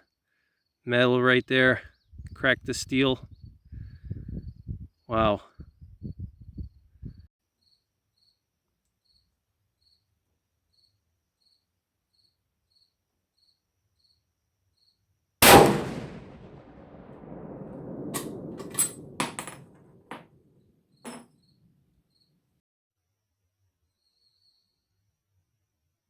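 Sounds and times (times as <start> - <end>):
faint insect chirping: 7.5 - 15.1, 23.9 - 24.9
loud rifle shot with echo: 15.4 - 20.2
sharp metallic clicks: 18.1 - 19.6.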